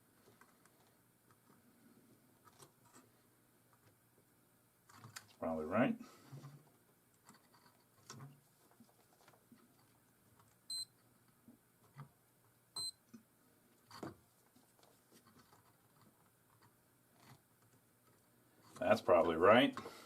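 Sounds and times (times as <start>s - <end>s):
multimeter high beeps: 10.7s - 10.9s, 12.8s - 13.0s.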